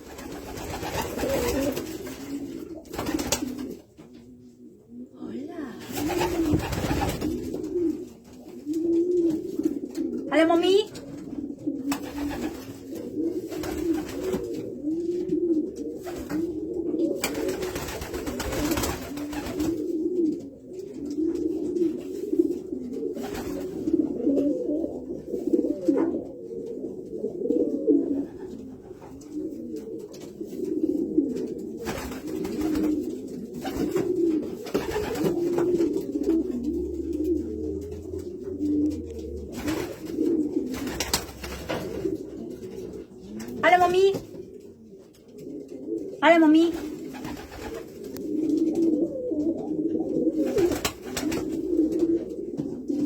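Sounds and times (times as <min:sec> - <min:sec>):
pigeons cooing: 0:00.0 - 0:53.0.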